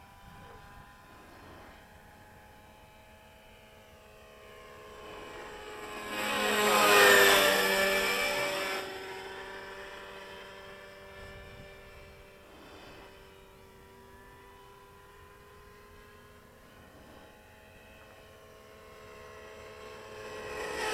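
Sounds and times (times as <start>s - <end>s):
model helicopter flying past: 0.0s - 20.9s.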